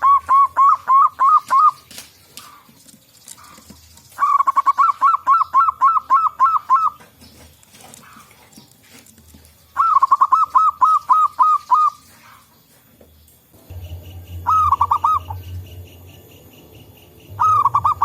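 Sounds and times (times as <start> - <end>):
dove cooing rapidly: 0.0 - 7.1, 9.8 - 12.4, 14.3 - 18.0.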